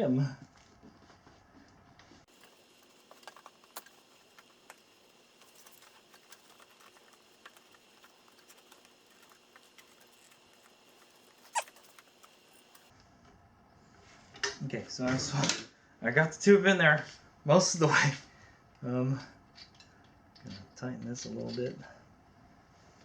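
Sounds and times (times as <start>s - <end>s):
tyre fitting clicks and scratching: 2.3s - 12.9s.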